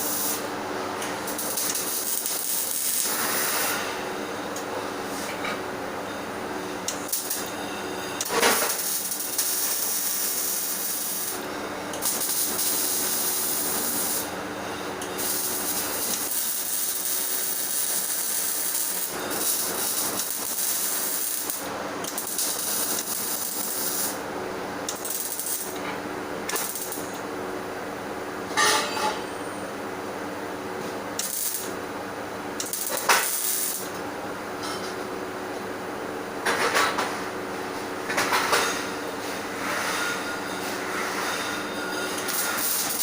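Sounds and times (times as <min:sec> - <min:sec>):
welding arc crackling and hissing: 0:00.0 - 0:04.1, 0:06.8 - 0:07.5, 0:08.2 - 0:25.8, 0:26.4 - 0:27.2, 0:30.8 - 0:31.9, 0:32.5 - 0:34.0, 0:42.0 - 0:43.0
welder humming: 0:00.0 - 0:05.6, 0:06.4 - 0:27.9, 0:30.8 - 0:34.0, 0:41.5 - 0:43.0.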